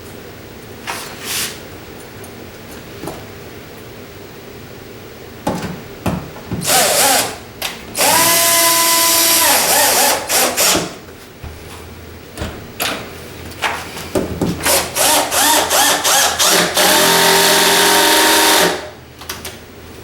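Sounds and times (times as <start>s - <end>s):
power drill driving screw: 6.6s - 7.4s, 8.0s - 10.9s, 14.7s - 18.9s.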